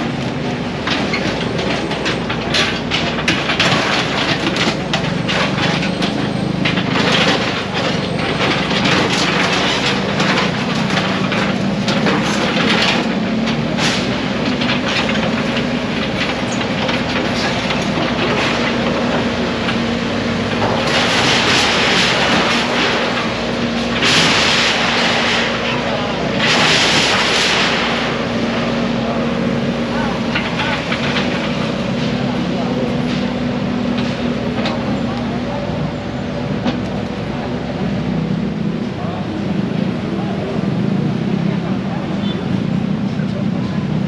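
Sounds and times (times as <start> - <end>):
engine running: 0.0 - 44.0
clattering and knocking of teardown: 0.8 - 35.0.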